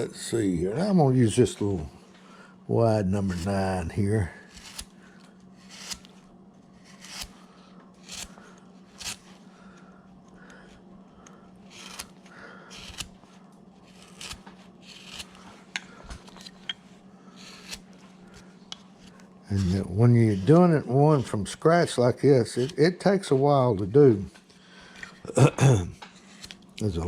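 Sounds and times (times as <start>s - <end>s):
carving gouge scraping wood: 4.4s - 4.9s, 5.6s - 6.1s, 6.8s - 7.3s, 8.0s - 9.3s, 11.7s - 13.1s, 13.8s - 15.4s, 17.4s - 17.9s, 19.0s - 21.3s.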